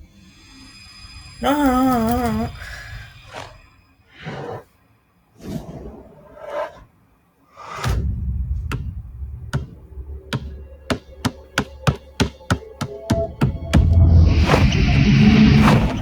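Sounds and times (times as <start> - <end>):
low soundtrack rumble: 8.0 - 16.0.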